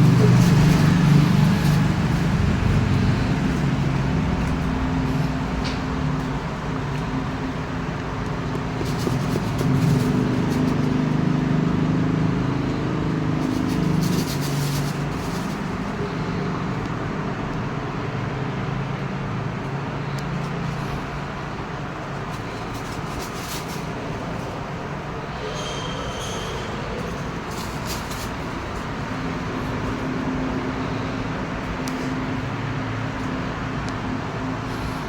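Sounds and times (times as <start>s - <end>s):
steady traffic hum: 0.0s - 35.0s
vehicle engine running close: 0.0s - 35.0s.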